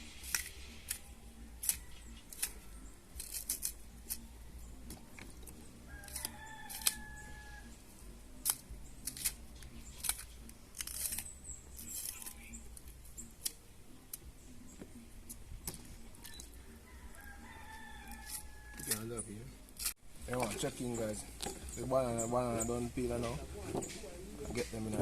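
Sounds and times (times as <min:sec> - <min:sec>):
knife peeling bananas: 0:00.2 - 0:07.2, 0:08.3 - 0:14.3
rooster crowing: 0:05.8 - 0:07.8, 0:16.2 - 0:19.1.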